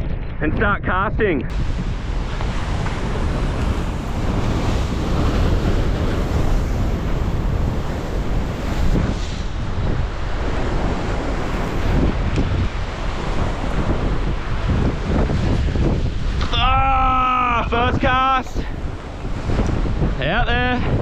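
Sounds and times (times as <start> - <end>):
wind buffeting microphone: 0.0 - 21.0
sea swell breaking on rock wall: 1.5 - 16.6.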